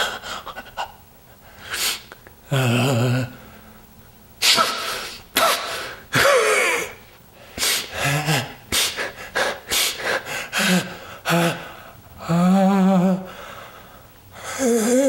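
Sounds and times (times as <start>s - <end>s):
man sneezing: 4.4s - 10.0s.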